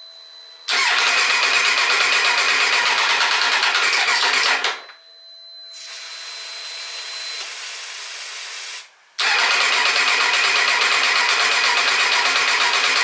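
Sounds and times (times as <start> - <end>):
motorcycle engine running: 9.2 - 13.0.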